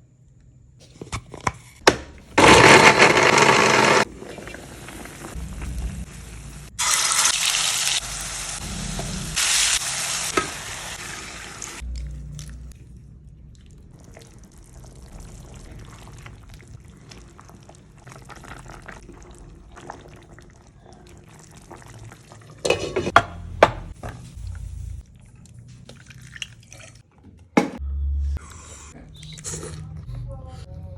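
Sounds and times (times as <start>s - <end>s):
liquid poured and stirred in pan: 13.6s - 23.2s.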